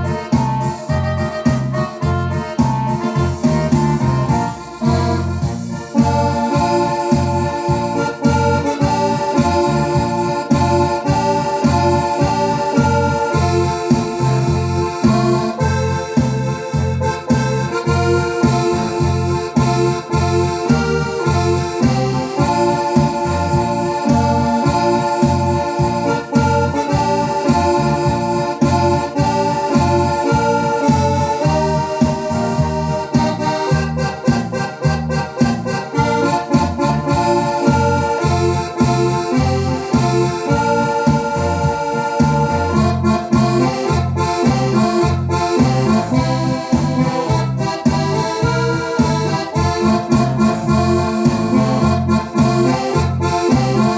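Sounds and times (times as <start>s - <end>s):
automatic rhythm accompaniment: 0.0s - 53.9s
electronic keyboard melody: 0.0s - 53.9s.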